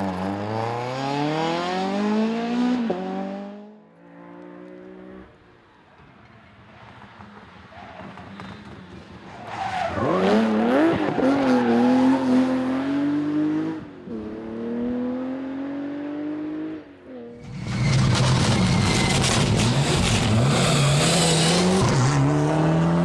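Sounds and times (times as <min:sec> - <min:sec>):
rally car engine accelerating: 0:17.4 - 0:23.0.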